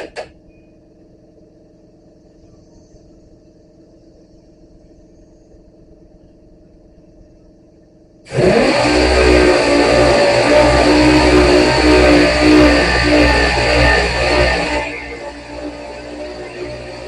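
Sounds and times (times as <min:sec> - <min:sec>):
faint low hum: 0:00.3 - 0:08.3.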